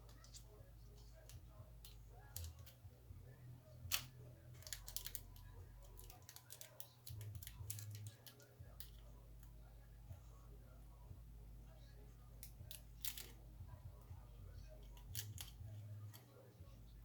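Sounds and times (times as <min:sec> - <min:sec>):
small parts clicking and tapping: 0:00.0 - 0:02.9, 0:03.8 - 0:09.6, 0:12.4 - 0:13.4, 0:14.7 - 0:16.3.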